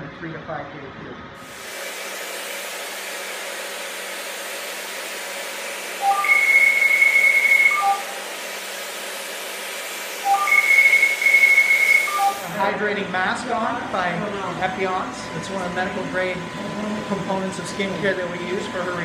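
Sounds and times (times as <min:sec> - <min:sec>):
laser equipment hissing: 0:05.8 - 0:12.7
electronic beeps and tones: 0:06.0 - 0:08.1, 0:10.3 - 0:12.5.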